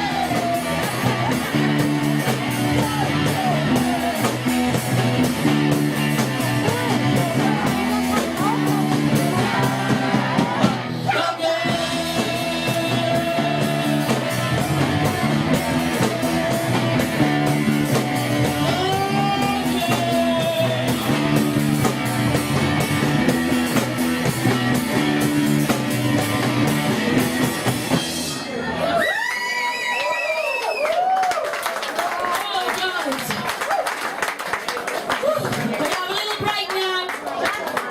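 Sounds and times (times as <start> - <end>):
person singing: 0.0 - 4.6, 6.2 - 21.9
live rock band playing: 0.0 - 29.0.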